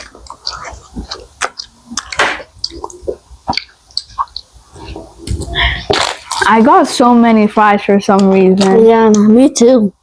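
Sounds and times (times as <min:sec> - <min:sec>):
wet mouth clicks and smacks: 0:00.0 - 0:04.6
chewing fries: 0:00.0 - 0:06.8.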